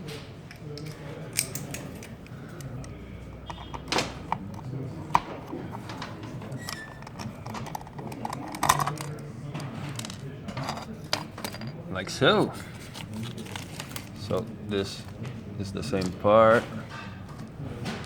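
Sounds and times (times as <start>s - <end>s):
screwdriver and small parts clinking: 0.5s - 2.7s, 5.8s - 9.1s, 9.9s - 11.7s.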